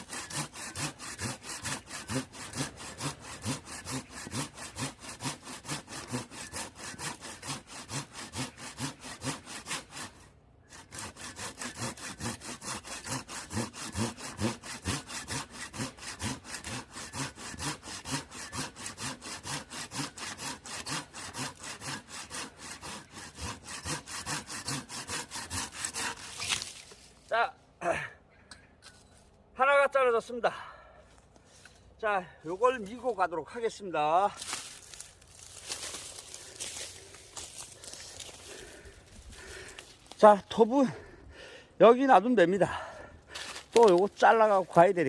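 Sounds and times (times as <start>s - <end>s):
hand saw cutting log: 0.0s - 27.0s, 34.4s - 40.8s, 43.3s - 45.0s.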